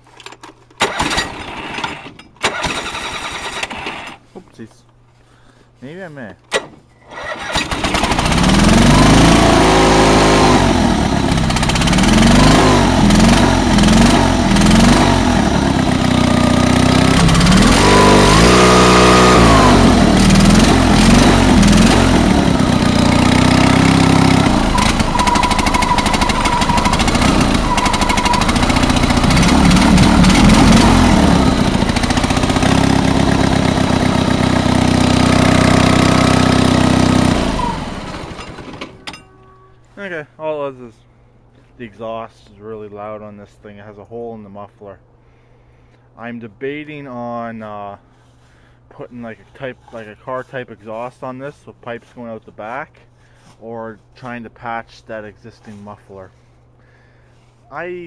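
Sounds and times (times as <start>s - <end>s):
loud tractor engine revving: 0.8s - 4.2s, 7.1s - 39.1s.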